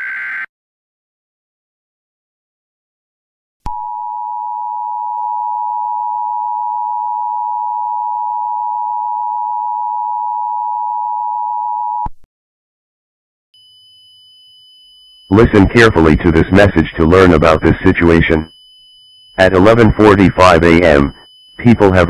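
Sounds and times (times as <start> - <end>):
faint steady high tone: 3.7 - 12.1, 13.6 - 22.0.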